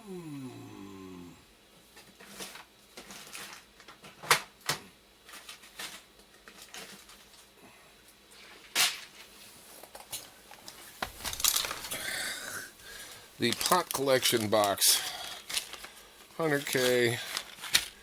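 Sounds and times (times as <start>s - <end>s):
small parts clicking and clattering: 9.8s - 12.0s, 13.4s - 15.9s, 16.5s - 18.0s.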